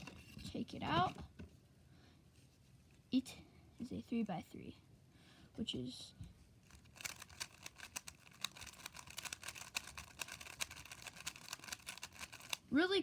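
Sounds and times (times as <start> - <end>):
puzzle cube clicking: 6.7 - 12.6.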